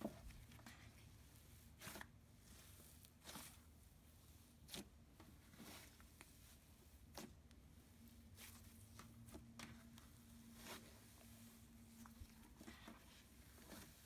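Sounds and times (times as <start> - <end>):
slime being worked by hand: 0.0 - 14.0.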